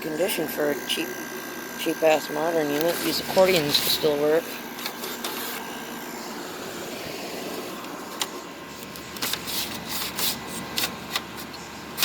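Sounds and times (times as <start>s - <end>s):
air conditioner fan running: 0.0s - 12.0s.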